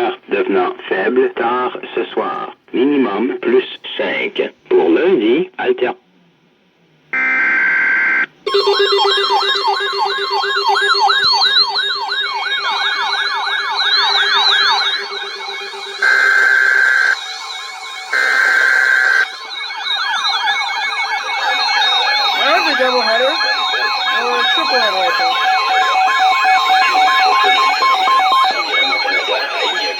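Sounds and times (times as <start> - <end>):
buzzing digital data burst: 7.2 - 29.9
wailing alert tone: 8.5 - 29.9.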